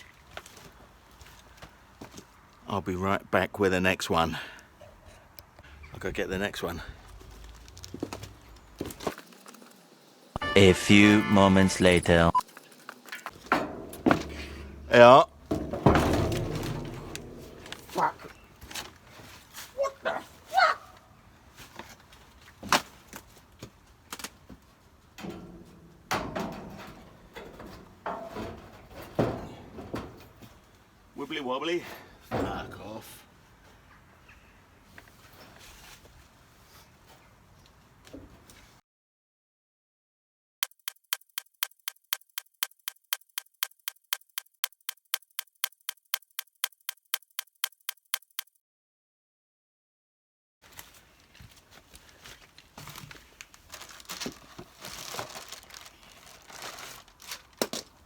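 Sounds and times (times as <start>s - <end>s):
metal sheet rattling and scraping: 13.4s - 18.1s
clock ticking: 40.6s - 48.6s.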